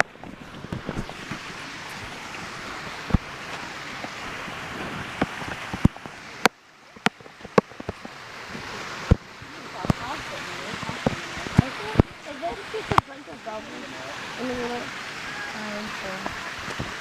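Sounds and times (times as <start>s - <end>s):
rushing water hiss: 0.0s - 17.0s.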